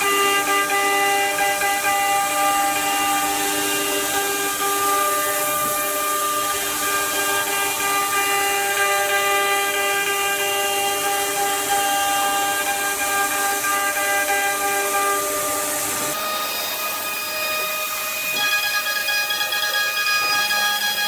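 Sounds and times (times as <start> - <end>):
router spindle whining: 0.0 - 21.0.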